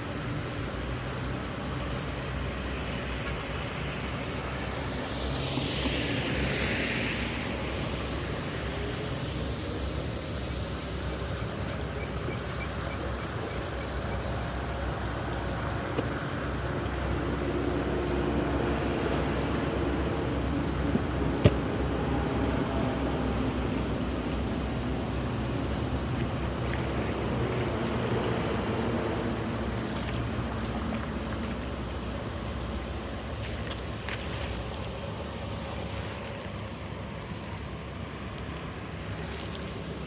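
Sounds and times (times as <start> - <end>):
vehicle passing by: 16.4 - 31.6.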